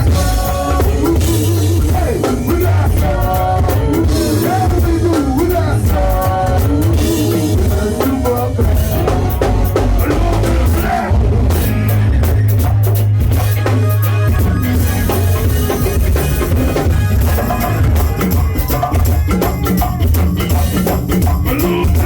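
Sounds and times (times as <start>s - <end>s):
person singing: 0.0s - 12.6s
bass line: 0.0s - 22.0s
drum kit and percussion: 0.0s - 22.0s.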